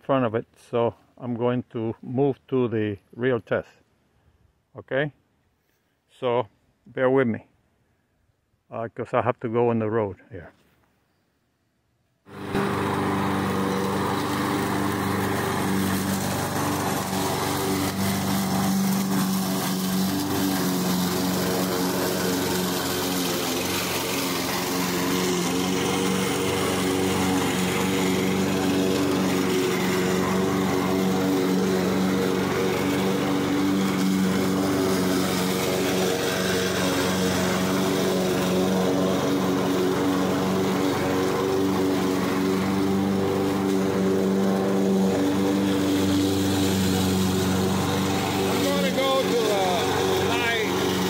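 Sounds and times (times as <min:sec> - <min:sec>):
lawnmower engine cutting grass: 0:12.3 - 0:51.0.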